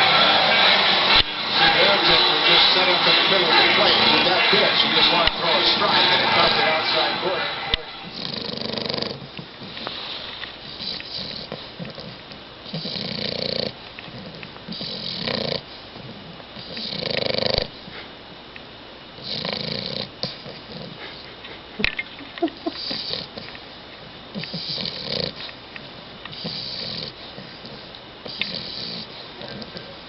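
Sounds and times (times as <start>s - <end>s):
puppy snoring: 7.8s - 18.1s, 19.2s - 25.6s, 26.3s - 30.0s.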